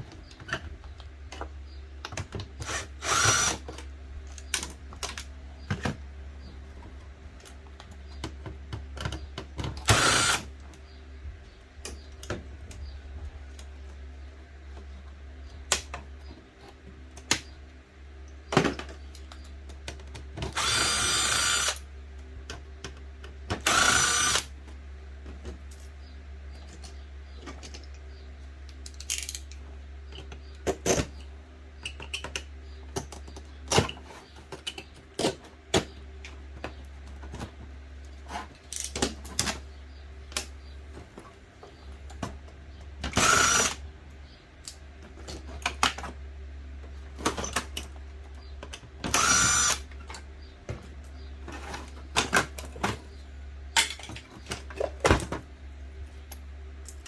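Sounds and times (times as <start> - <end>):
plastic parts and screws clicking: 0.1 - 6.0, 18.5 - 24.5, 28.6 - 37.5, 38.1 - 39.6, 43.0 - 43.8, 48.6 - 53.1
power screwdriver whirring: 2.6 - 3.6, 9.9 - 10.5, 20.5 - 21.8, 23.6 - 24.5, 43.1 - 43.8, 49.1 - 49.8.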